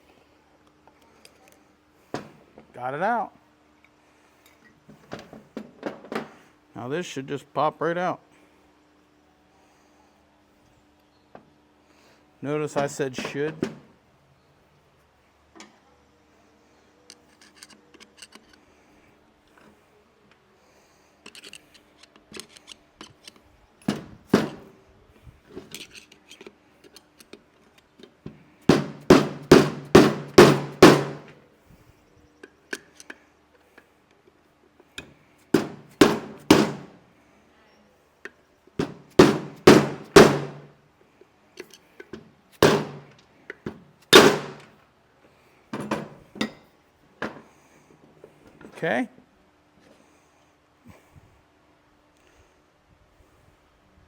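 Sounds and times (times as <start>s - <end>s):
hammer striking metal gear: 23.9s - 24.7s, 28.7s - 31.4s, 35.6s - 37.0s, 38.8s - 40.7s, 42.6s - 43.1s, 44.1s - 44.7s.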